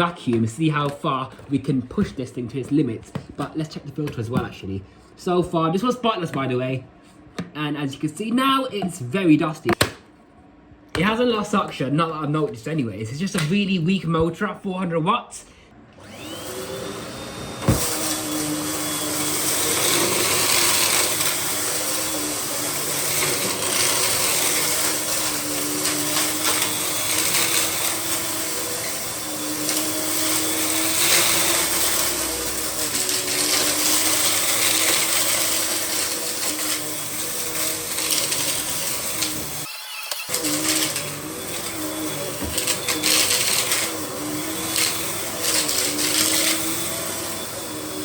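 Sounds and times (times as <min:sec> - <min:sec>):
vacuum cleaner running: 0:16.0 - 0:48.0.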